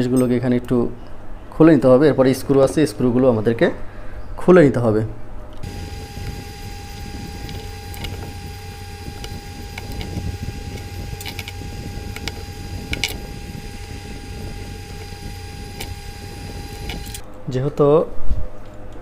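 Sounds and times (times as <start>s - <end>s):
low mechanical hum: 5.1s - 19.0s
thin constant tone: 5.6s - 17.2s.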